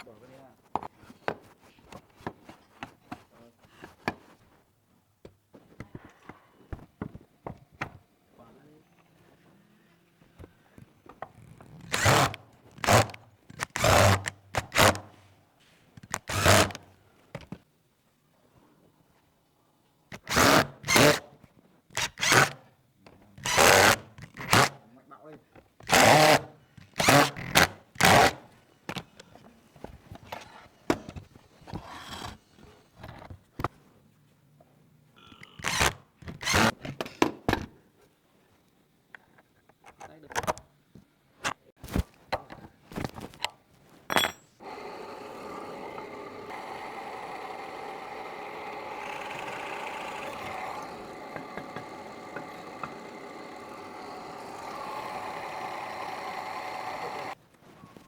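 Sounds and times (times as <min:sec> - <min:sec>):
small motor running: 0:44.6 - 0:57.4.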